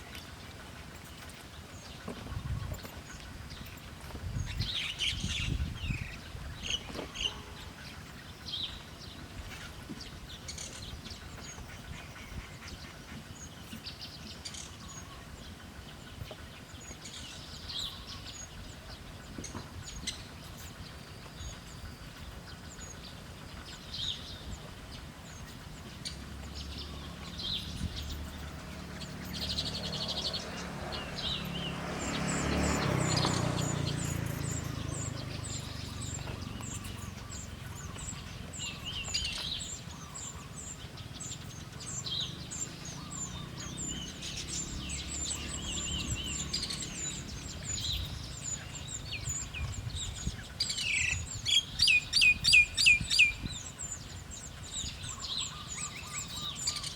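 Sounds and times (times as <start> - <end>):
birds chirping: 0.0 - 56.9.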